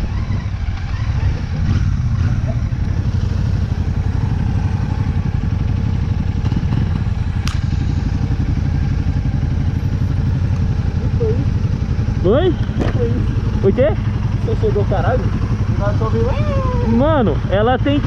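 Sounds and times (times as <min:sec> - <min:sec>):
motorcycle engine running: 0:00.0 - 0:18.0
sharp click: 0:07.4 - 0:07.6.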